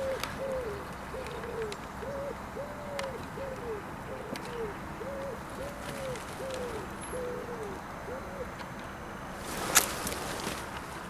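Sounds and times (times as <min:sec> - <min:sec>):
bird hooting: 0:00.0 - 0:08.6.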